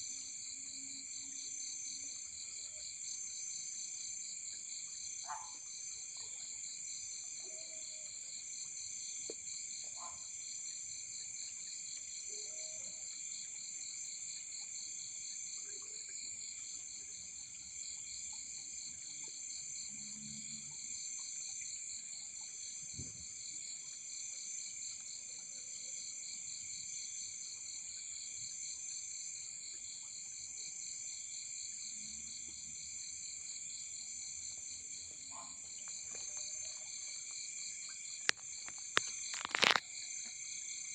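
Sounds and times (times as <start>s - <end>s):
insects chorus: 30.0s - 40.9s.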